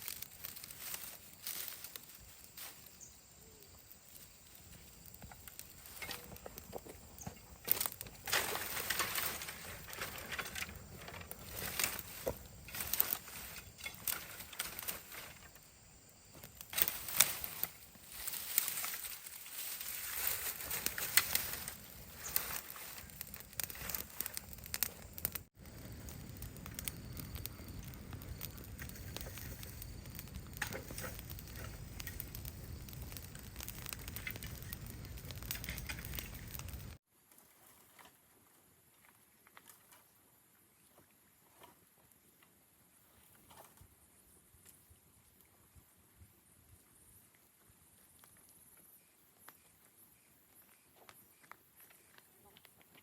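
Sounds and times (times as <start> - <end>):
crackling and snapping clicks: 5.0 - 15.7, 16.4 - 37.0.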